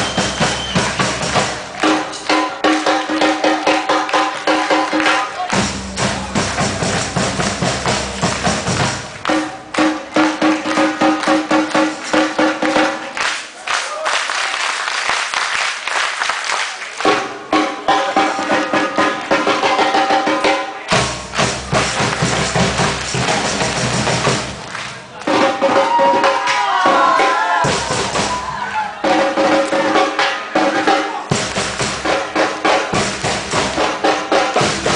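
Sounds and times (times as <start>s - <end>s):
samba percussion band: 0.0s - 13.3s, 17.0s - 34.9s
deep bass drums: 5.5s - 9.2s.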